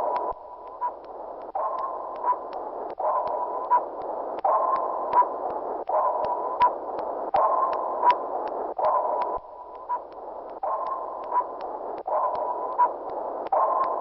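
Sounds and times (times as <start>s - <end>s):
sharp clicks: 0.0s - 14.0s
sonar tone: 8.8s - 14.0s.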